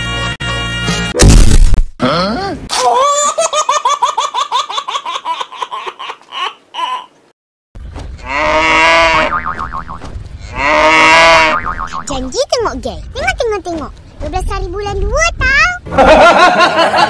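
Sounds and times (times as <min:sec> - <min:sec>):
springy boing chirps: 0:09.0 - 0:12.3.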